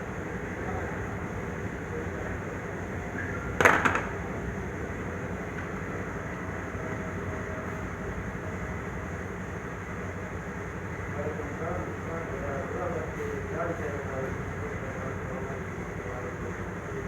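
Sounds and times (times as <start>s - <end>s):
sharp knocks: 3.6s - 4.2s.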